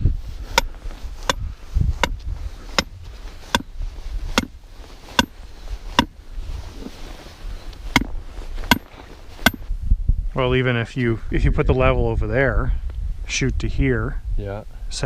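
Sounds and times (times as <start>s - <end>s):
hammer striking steel stakes: 0.5s - 2.2s, 2.8s - 3.8s, 4.4s - 5.4s, 6.0s - 6.2s, 7.9s - 9.7s.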